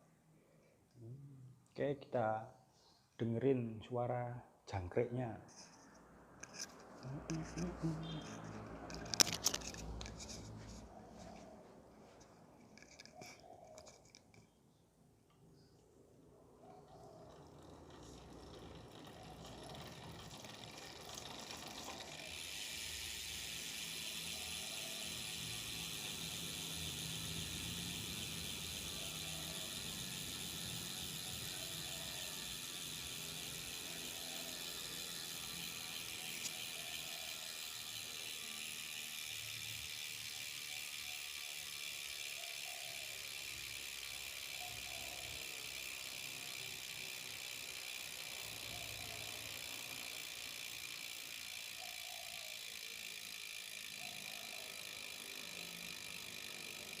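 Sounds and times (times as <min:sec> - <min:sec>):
bike hub ticking: 0:06.4 - 0:11.4, 0:16.5 - 0:57.0.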